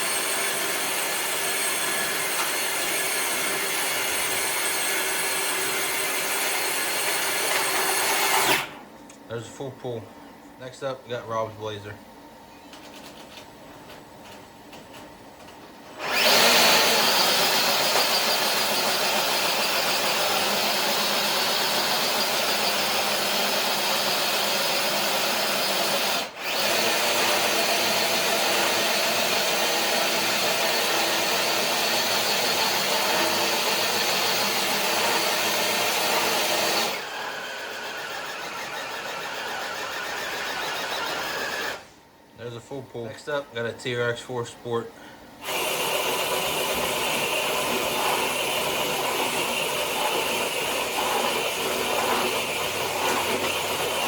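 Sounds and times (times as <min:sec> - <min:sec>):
electric motor whining: 0:16.0 - 0:22.4, 0:45.4 - 0:54.0.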